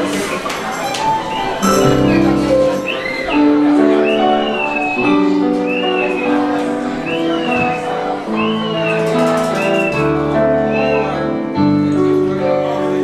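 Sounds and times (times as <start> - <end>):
sustained chords: 1.6 - 5.0
high melody phrase: 1.6 - 8.9.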